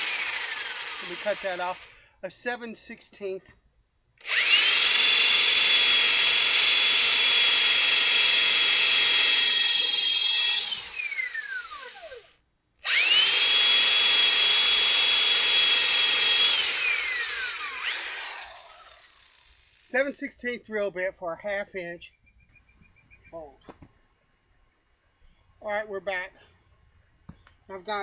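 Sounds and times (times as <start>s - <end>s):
electric drill whining: 0.0s - 2.0s, 4.2s - 19.9s.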